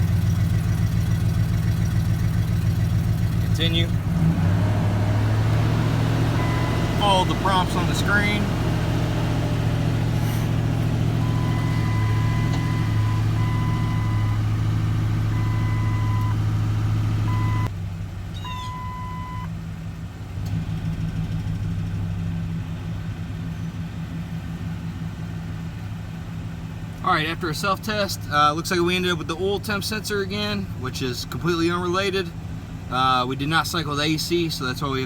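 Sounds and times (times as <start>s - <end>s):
truck engine running: 0.0s - 35.0s
electronic beep: 18.4s - 19.5s.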